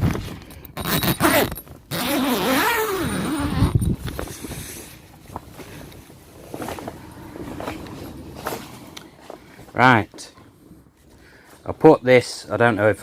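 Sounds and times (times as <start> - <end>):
large zip pulled open: 0.8 - 4.7.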